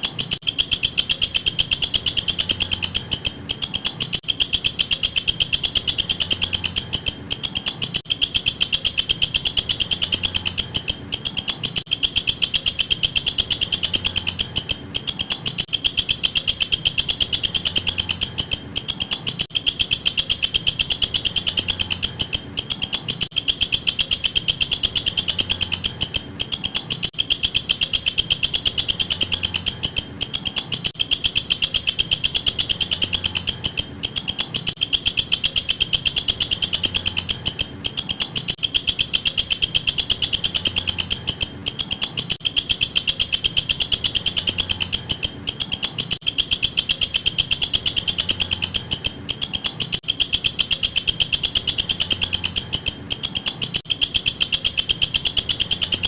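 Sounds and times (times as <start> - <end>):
katydid stridulating: 0.0 - 56.0.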